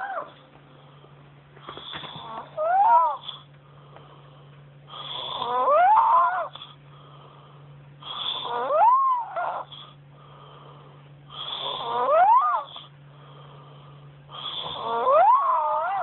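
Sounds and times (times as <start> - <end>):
girl snoring with whistling tone: 4.9 - 6.7, 8.0 - 10.0, 11.4 - 12.9, 14.4 - 16.0.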